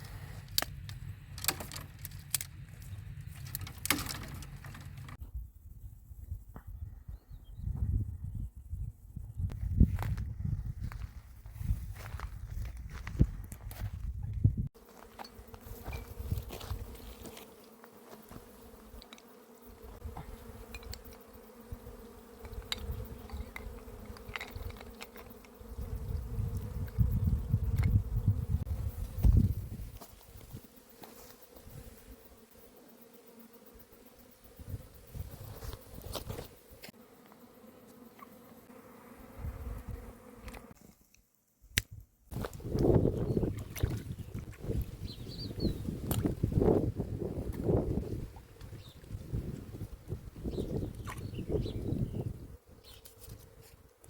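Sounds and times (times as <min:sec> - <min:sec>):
flying insect buzzing: 0:14.8 - 0:41.0, 0:42.3 - 0:54.0.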